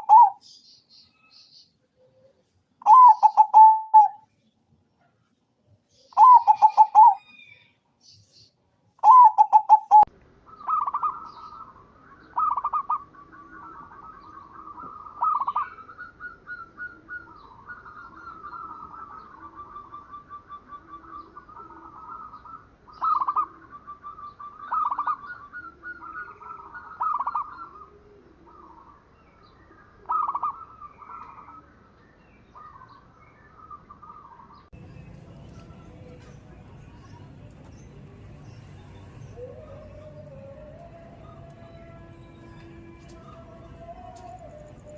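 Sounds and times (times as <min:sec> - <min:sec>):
dove cooing: 0:00.0 - 0:00.4, 0:02.1 - 0:04.2, 0:06.1 - 0:07.4, 0:09.0 - 0:10.1, 0:12.4 - 0:28.9, 0:30.0 - 0:31.5, 0:35.0 - 0:44.9.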